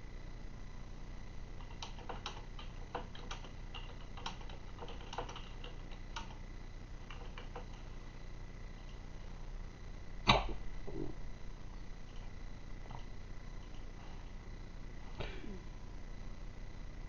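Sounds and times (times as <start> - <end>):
steady low hum: 0.0 - 17.0
faint small clicks and ticks: 1.6 - 6.4.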